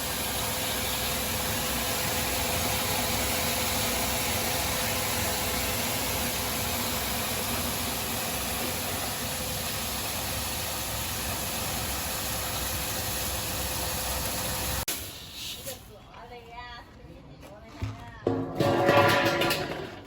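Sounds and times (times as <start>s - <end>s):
milling machine running: 0.0s - 14.9s.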